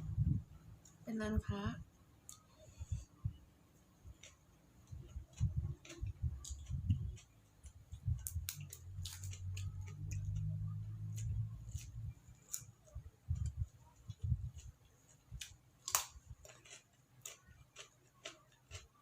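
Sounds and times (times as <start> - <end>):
low steady hum: 0.0 - 19.0
chewing with clicks and taps: 4.1 - 12.7, 13.4 - 19.0.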